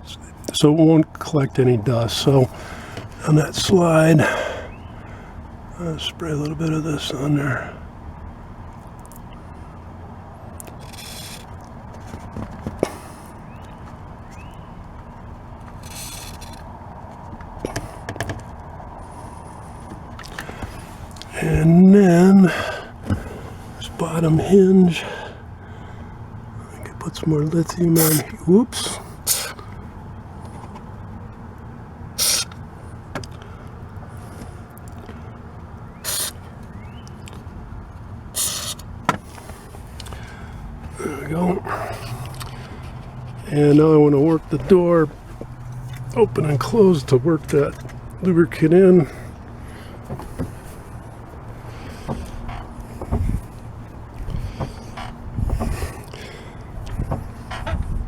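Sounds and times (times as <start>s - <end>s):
aerosol can spraying: 28.0s - 28.2s, 32.2s - 32.6s, 36.0s - 36.4s, 38.4s - 38.8s.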